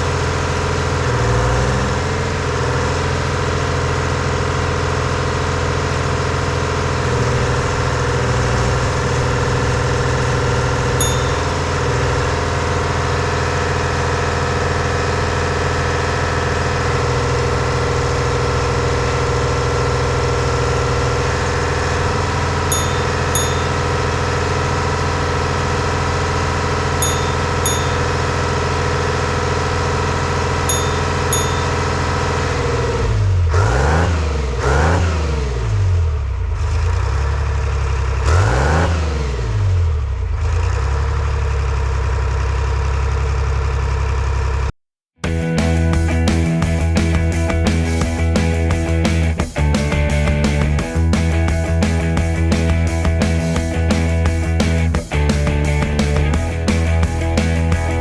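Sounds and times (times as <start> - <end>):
excavator diesel engine running: 0.0 - 34.0.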